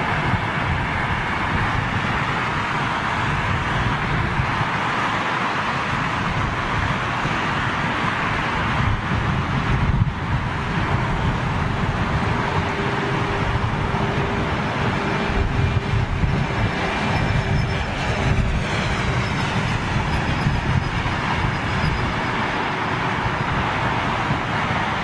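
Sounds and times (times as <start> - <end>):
wind buffeting microphone: 0.0 - 25.0
distant engine rumble: 6.2 - 25.0.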